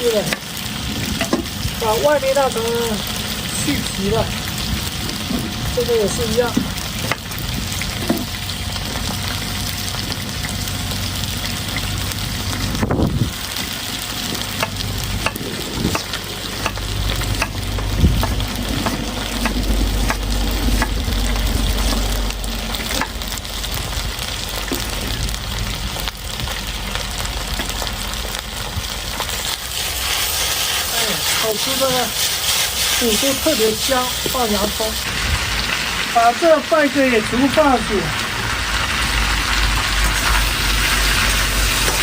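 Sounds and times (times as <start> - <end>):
potatoes sizzling in hot oil: 0.0 - 42.0
spatula scraping a wok: 29.2 - 35.0.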